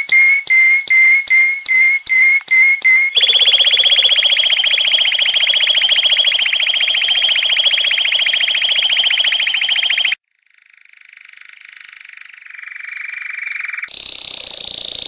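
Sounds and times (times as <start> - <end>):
bird trilling: 3.1 - 10.2.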